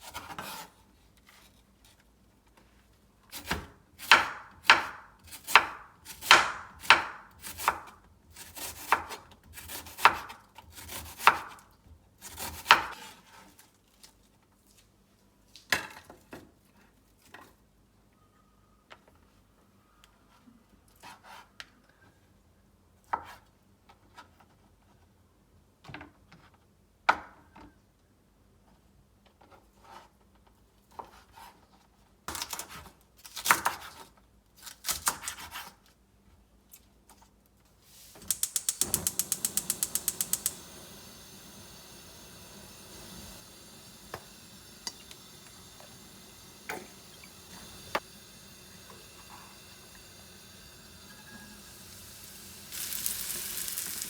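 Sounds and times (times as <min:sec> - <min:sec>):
gas stove hiss: 0:37.8 - 0:54.0
gas stove igniter clicking: 0:38.1 - 0:54.0.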